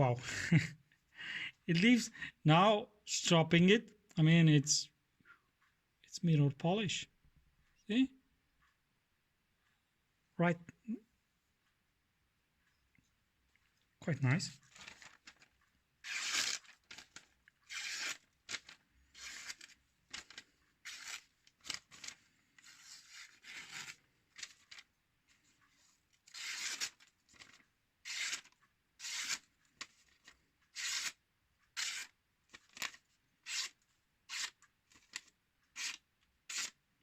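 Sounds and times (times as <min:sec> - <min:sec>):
knife stroking on a strop: 0:31.8 - 0:32.1.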